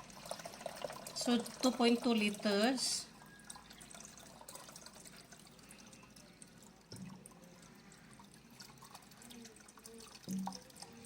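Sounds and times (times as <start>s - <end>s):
water pouring and dripping: 0.0s - 11.0s.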